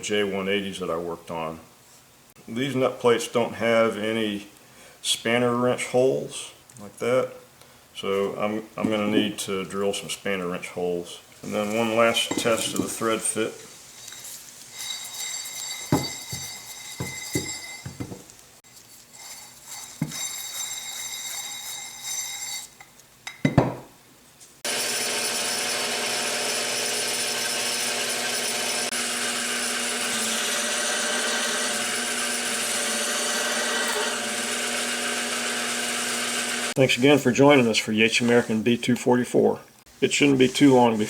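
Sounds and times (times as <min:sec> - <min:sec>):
short metallic ring: 0:14.8 - 0:17.9
machine tool running: 0:24.7 - 0:36.8.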